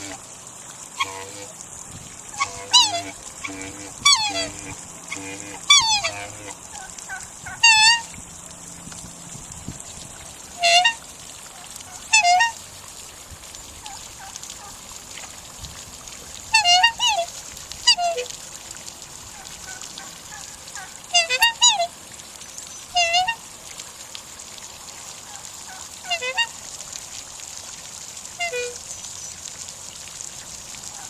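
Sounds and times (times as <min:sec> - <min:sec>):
swans bugling: 0:00.0 - 0:08.5, 0:10.5 - 0:12.6, 0:16.5 - 0:18.3.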